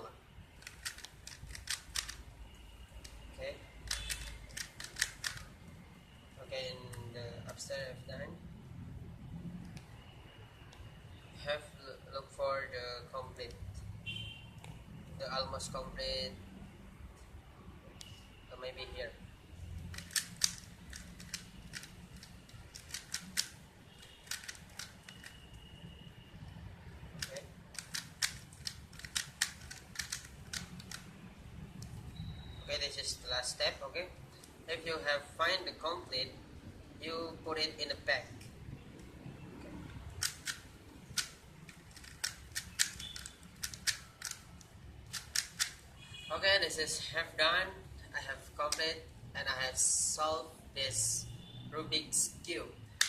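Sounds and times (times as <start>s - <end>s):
puzzle cube plastic clicks: 0.6s - 2.2s, 3.9s - 5.5s, 19.8s - 25.5s, 27.2s - 31.1s, 40.1s - 45.9s.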